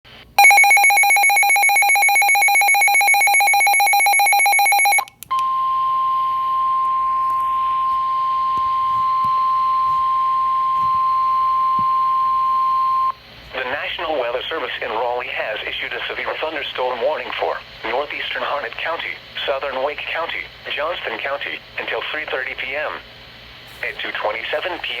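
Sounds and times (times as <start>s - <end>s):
rapid electronic alarm beeps: 0.4s - 5.1s
steady single-pitch warning tone: 0.4s - 13.2s
light radio hiss: 6.8s - 25.0s.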